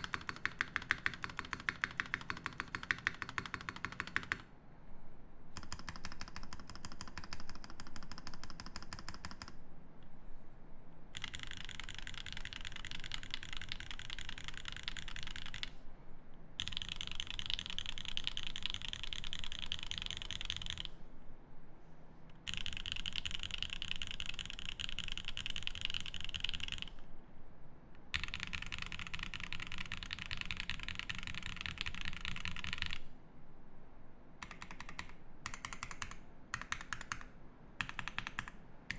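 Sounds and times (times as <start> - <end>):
fast mechanical keyboard typing: 0.0 - 4.4, 5.6 - 9.6, 11.2 - 15.8, 16.6 - 20.9, 22.5 - 27.0, 28.1 - 33.0, 34.4 - 38.9.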